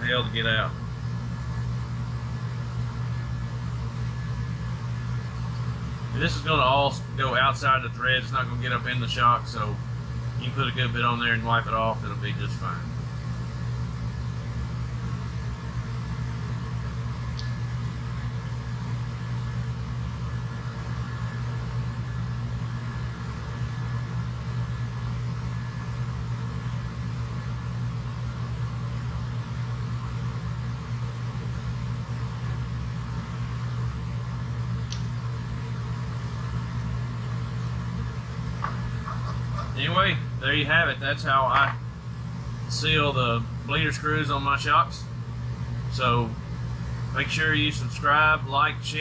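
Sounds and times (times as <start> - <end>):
low mechanical hum: 0.0 - 49.0
faint clicks: 34.9 - 35.1.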